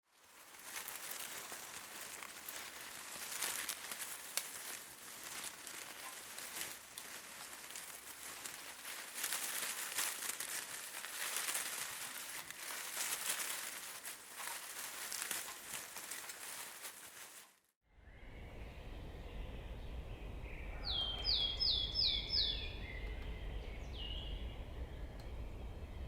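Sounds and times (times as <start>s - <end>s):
leaves rustling in gusting wind: 0.0s - 17.4s.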